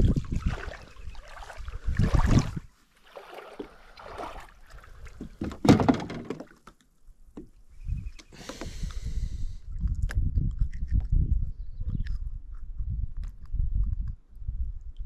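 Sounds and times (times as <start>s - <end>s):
wind buffeting microphone: 0.0s - 2.7s, 7.7s - 15.0s
microphone handling knocks: 5.2s - 6.4s.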